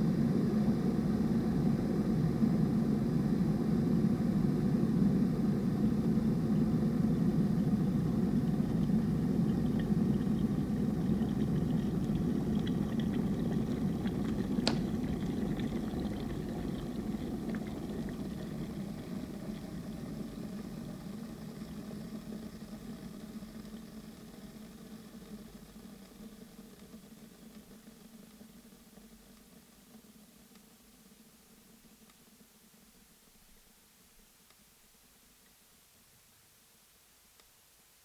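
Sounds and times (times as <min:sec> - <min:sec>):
kettle boiling rumble: 0:00.0 - 0:33.7
kettle switch click: 0:14.6 - 0:15.0.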